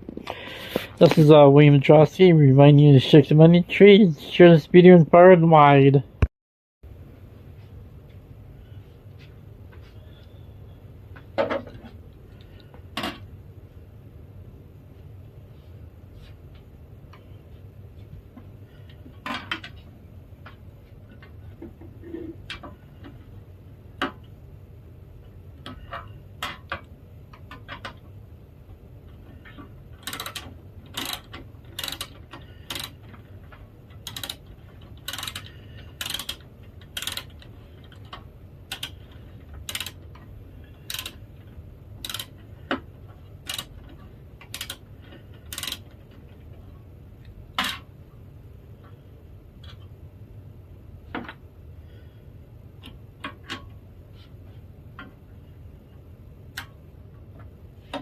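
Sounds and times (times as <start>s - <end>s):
low steady hum: 0.0s - 58.0s
clicks and knocks of tools: 29.1s - 47.9s.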